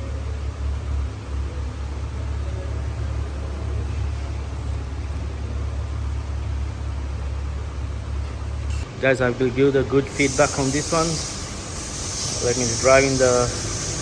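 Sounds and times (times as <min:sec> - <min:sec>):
car engine and road rumble: 0:00.0 - 0:13.8
even hiss: 0:10.0 - 0:14.0.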